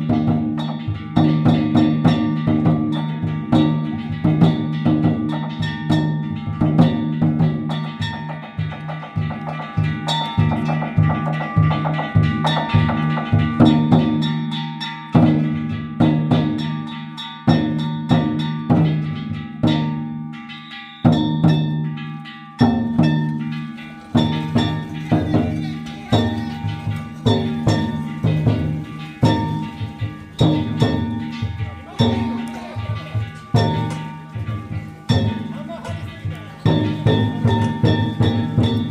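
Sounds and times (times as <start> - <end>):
large taiko drum strikes: 0.0 - 20.2, 21.1 - 22.0, 22.6 - 38.9
small hand gongs ringing: 0.0 - 38.9.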